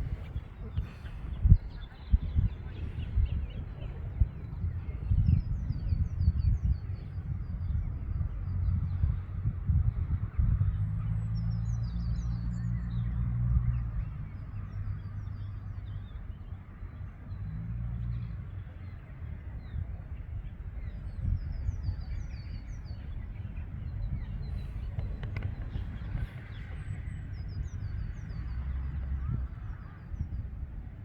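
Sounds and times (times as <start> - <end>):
small birds chirping: 0.0 - 31.0
wind rumble on microphone: 0.0 - 31.0.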